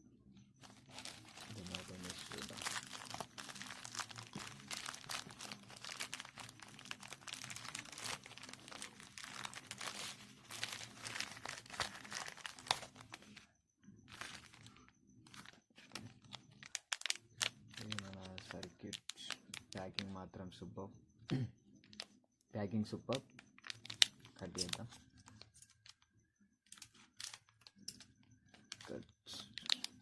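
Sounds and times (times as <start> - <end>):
plastic packaging tearing and crinkling: 0.6 - 13.1, 15.3 - 19.7, 23.6 - 24.9, 29.4 - 29.9.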